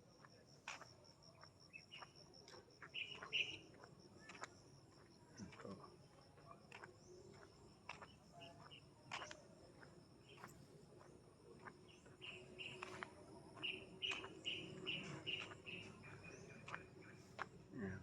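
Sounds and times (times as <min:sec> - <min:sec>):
birdsong: 0:02.9 - 0:03.6, 0:11.8 - 0:18.0
high insect drone: 0:09.5 - 0:18.0.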